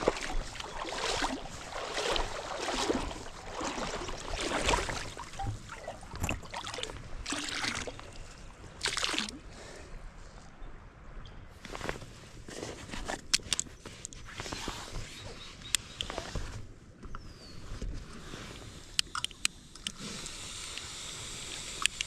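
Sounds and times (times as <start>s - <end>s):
stream rushing: 0.0s - 8.0s
water splashing and sloshing: 0.0s - 9.7s.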